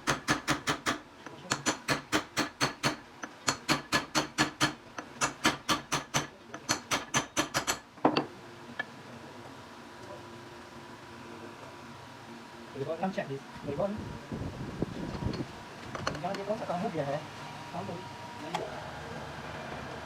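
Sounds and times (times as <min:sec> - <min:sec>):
fast sharp knocks: 0:00.0 - 0:07.8.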